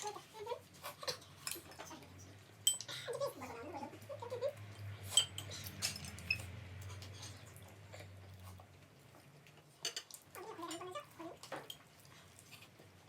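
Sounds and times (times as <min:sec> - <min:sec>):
chewing: 0:00.0 - 0:13.0
cutlery clinking on dishes: 0:02.6 - 0:03.0, 0:05.0 - 0:07.6, 0:09.8 - 0:11.9.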